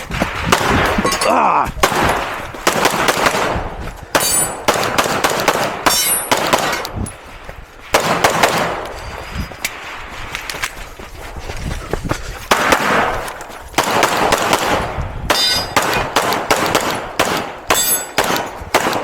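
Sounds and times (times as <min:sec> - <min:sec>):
pistol shots: 0:01.8 - 0:07.0, 0:07.9 - 0:08.9, 0:12.5 - 0:13.2, 0:13.8 - 0:19.0
steel targets ringing: 0:05.9 - 0:06.3, 0:15.3 - 0:15.8, 0:17.7 - 0:18.2.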